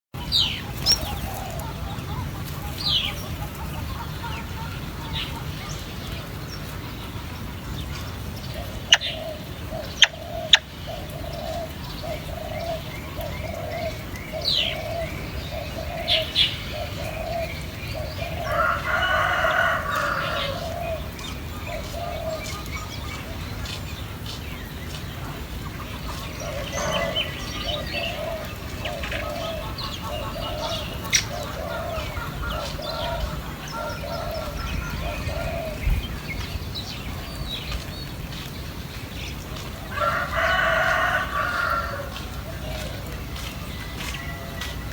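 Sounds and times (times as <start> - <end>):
birds chirping: 0.2 - 44.9
bird low hooting call: 8.5 - 23.7, 25.2 - 37.2.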